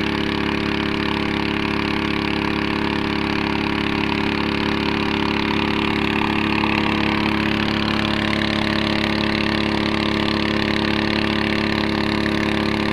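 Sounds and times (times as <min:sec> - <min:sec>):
small engine idling: 0:00.0 - 0:12.9.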